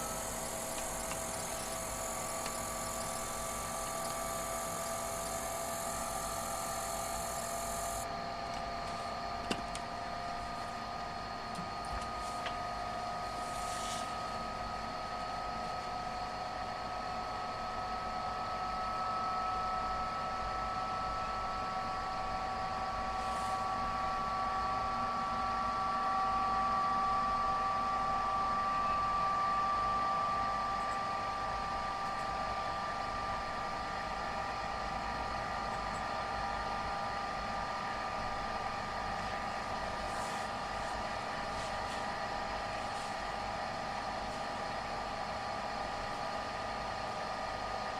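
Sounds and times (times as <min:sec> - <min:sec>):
high whining tones: 0:00.0 - 0:08.0.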